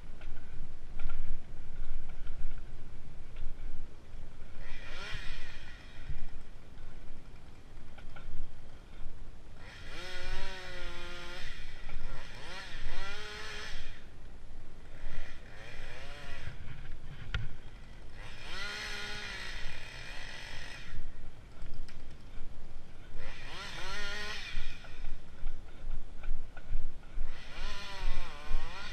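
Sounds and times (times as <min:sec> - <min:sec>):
low engine hum: 0:00.0 - 0:28.9
saw chain cutting wood: 0:04.5 - 0:08.3, 0:09.6 - 0:14.1, 0:14.9 - 0:22.5, 0:23.1 - 0:28.9.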